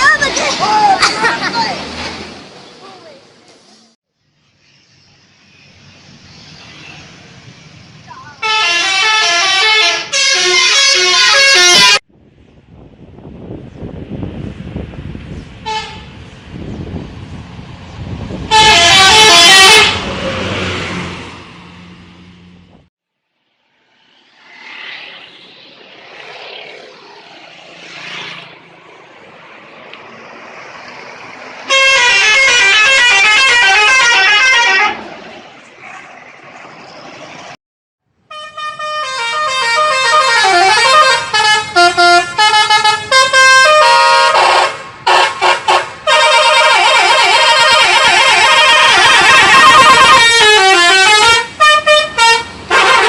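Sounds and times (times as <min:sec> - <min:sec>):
traffic noise: 0:00.0 - 0:53.0
multi-tone bus air horn melody: 0:08.4 - 0:12.0, 0:15.6 - 0:16.2, 0:18.5 - 0:20.2, 0:31.7 - 0:35.0, 0:38.3 - 0:53.0.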